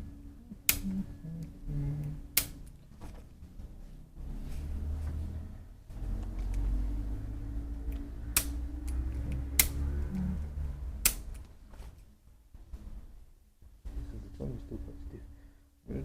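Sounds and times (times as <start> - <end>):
low rumble: 0.0 - 11.5.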